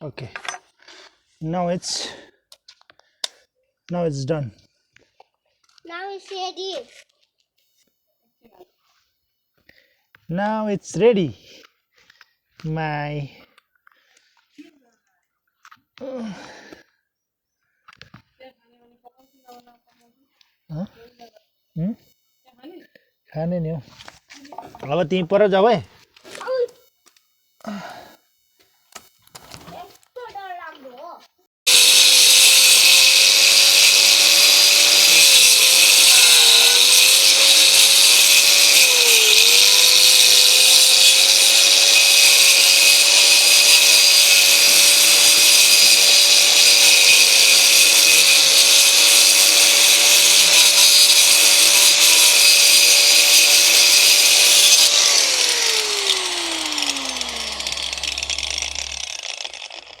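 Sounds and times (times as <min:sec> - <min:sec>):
angle grinder whining: 0:31.7 - 1:00.0.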